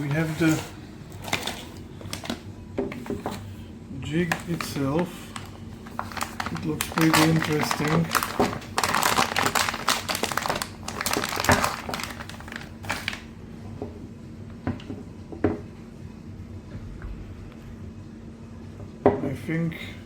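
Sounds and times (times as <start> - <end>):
packaging crinkling and rustling: 0.0 - 13.3.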